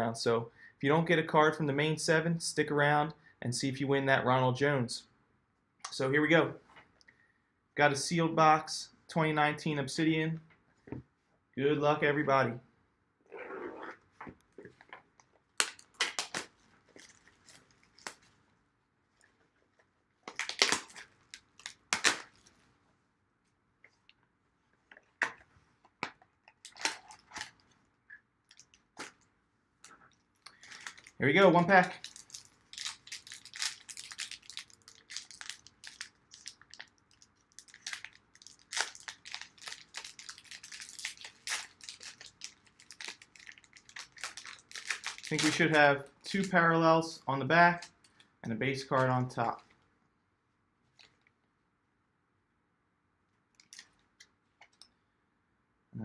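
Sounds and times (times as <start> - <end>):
plastic shrink wrap crinkling: 15.5 - 18.4, 19.2 - 22.7, 26.4 - 27.8, 29.8 - 46.6, 53.6 - 54.8.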